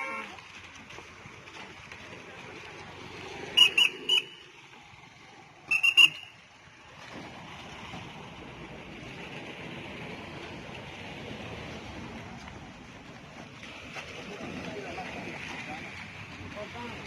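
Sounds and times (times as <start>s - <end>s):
whistle short shrill blasts: 3.6s - 4.5s, 5.7s - 6.4s.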